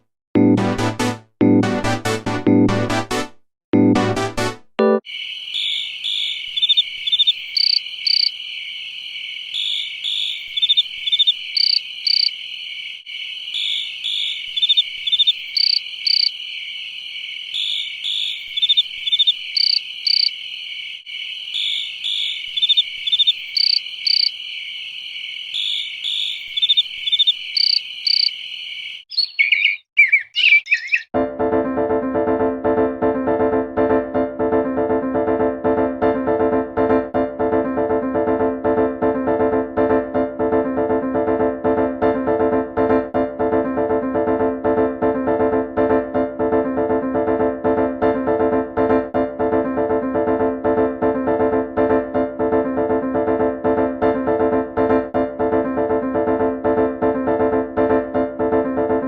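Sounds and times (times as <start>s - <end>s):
quick gliding chirps: 5.1s - 12.5s, 13.4s - 31.1s
high chirps: 5.1s - 31.1s.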